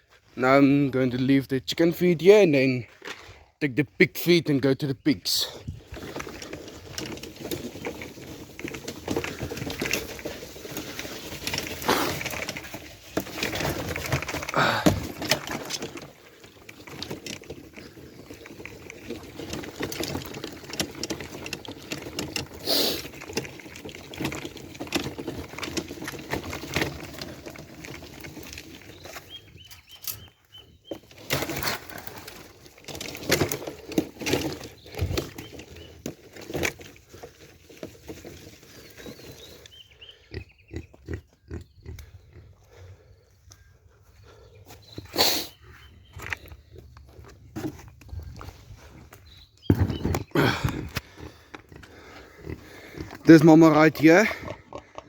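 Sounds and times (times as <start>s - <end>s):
knocks of feed being carried: 0.0s - 55.0s
footsteps: 2.8s - 3.5s
birds calling: 3.9s - 55.0s
rustling: 5.4s - 39.9s.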